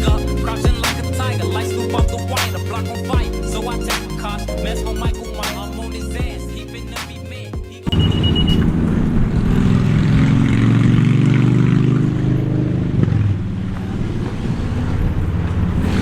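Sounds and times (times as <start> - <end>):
high beep: 7.9 - 8.7
engine running steadily: 7.9 - 16.0.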